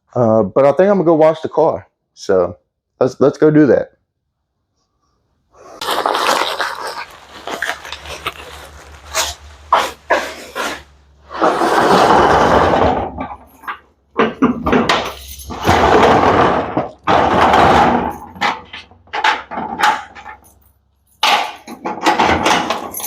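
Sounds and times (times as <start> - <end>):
metal roll-up door rattling: 11.3 - 20.5, 21.2 - 23.0
metal clanks and knocks: 11.4 - 23.0.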